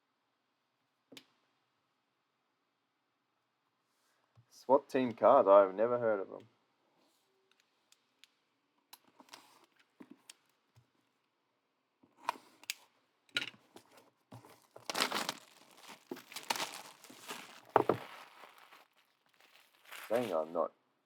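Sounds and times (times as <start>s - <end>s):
card wrapper tearing and crinkling: 14.5s - 20.5s.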